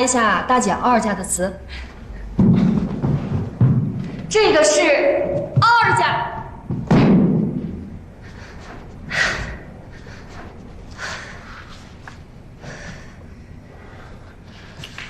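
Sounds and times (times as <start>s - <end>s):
person breathing heavily: 8.1s - 14.9s.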